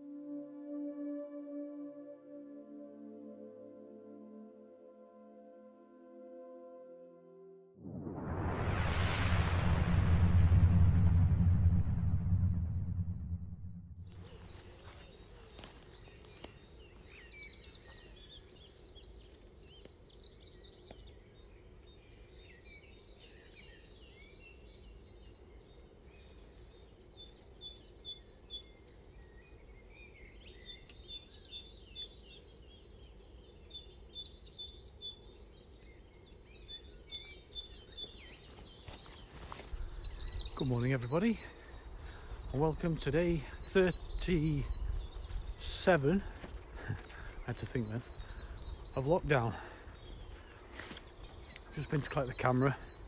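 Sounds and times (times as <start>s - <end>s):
low rumble: 7.8s - 14.8s
songbirds singing: 14.0s - 53.0s.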